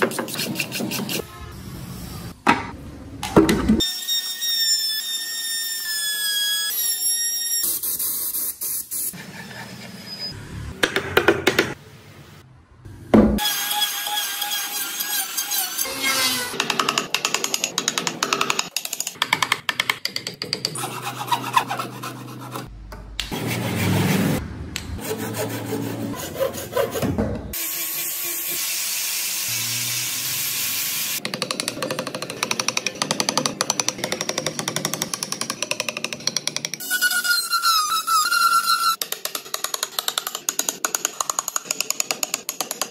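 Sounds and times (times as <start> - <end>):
wood rasping and scraping: 20.8 - 22.7, 25.0 - 27.0.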